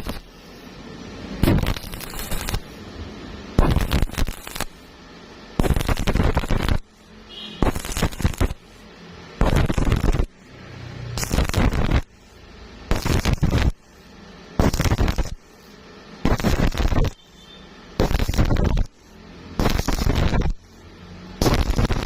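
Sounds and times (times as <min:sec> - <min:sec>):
welding arc crackling: 0:00.0 - 0:13.8, 0:14.6 - 0:15.5, 0:16.2 - 0:22.0.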